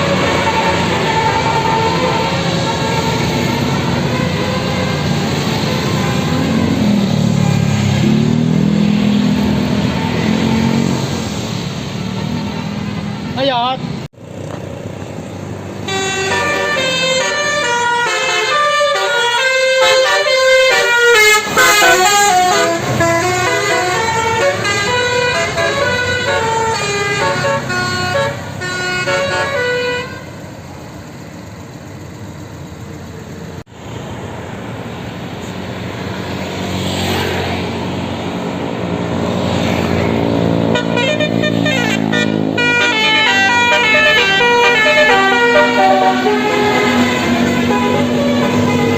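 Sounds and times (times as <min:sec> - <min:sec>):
bus traffic noise: 0:00.0 - 0:48.9
bus air horn melody: 0:15.8 - 0:30.4, 0:40.6 - 0:48.9.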